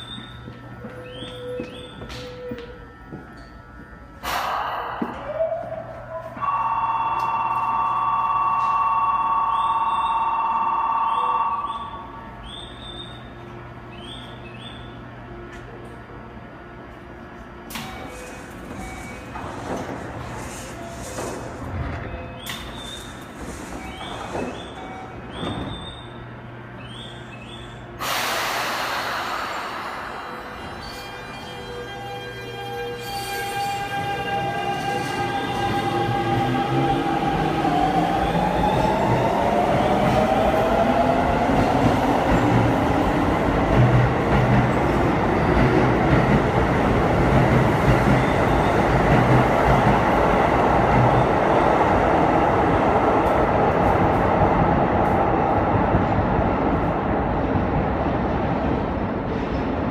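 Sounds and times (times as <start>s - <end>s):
electric train humming: 0.0s - 59.9s
platform departure buzzer ringing: 6.4s - 12.1s
burst of hiss: 28.0s - 30.2s.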